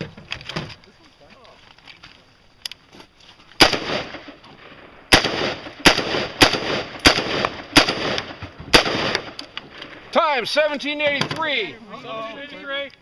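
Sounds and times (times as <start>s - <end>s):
gunshots with short echo: 3.6s - 4.4s, 5.1s - 9.4s.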